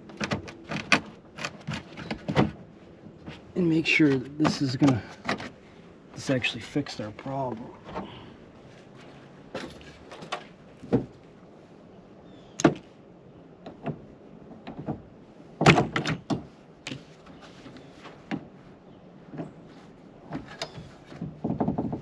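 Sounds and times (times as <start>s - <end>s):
truck door knocks and clunks: 0.1s - 3.4s, 14.6s - 17.0s, 21.1s - 22.0s.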